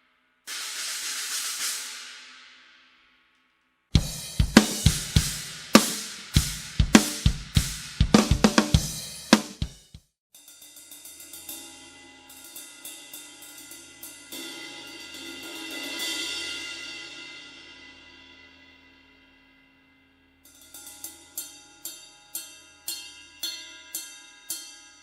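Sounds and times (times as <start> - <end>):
cymbal crashes: 0.5 - 3.0, 4.0 - 9.7, 10.4 - 21.6
cymbal rapid light strokes: 0.5 - 3.1.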